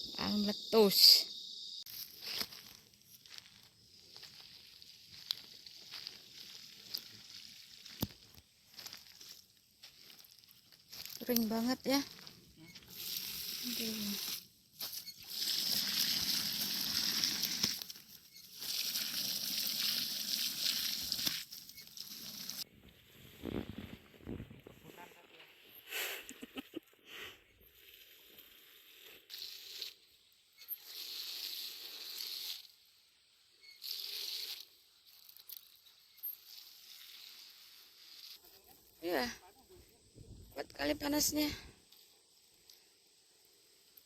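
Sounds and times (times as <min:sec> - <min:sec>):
water spraying onto plants: 0:12.9 - 0:22.6, 0:30.7 - 0:32.7, 0:36.5 - 0:38.4.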